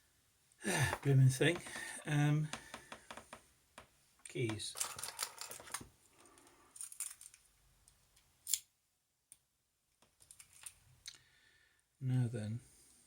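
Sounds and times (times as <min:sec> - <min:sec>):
small metal clicks and clinks: 0:06.8 - 0:07.4.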